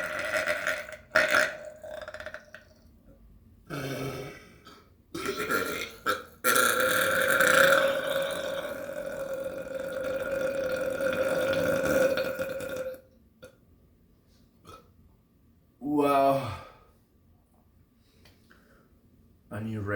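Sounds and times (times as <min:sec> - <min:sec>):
long human burp: 0:00.0 - 0:02.8, 0:03.7 - 0:13.6, 0:14.6 - 0:14.9, 0:15.8 - 0:16.8.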